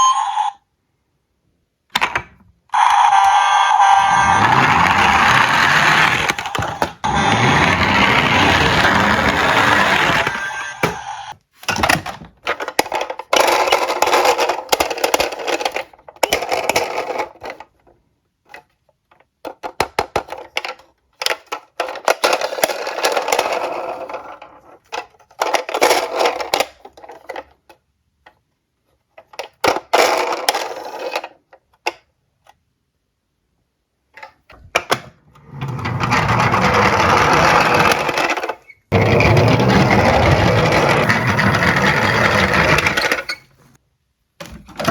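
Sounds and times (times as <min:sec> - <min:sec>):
toy cars rolling and rattling: 0:02.8 - 0:32.6, 0:34.1 - 0:43.8.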